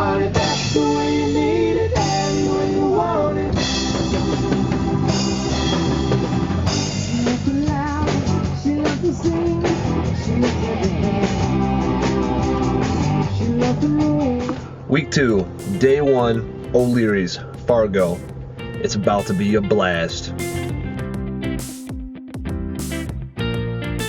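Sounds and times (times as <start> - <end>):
person singing: 0.0 - 4.2, 7.0 - 11.8, 13.2 - 14.6, 19.1 - 19.6
drums: 0.0 - 24.0
electric guitar: 0.0 - 24.0.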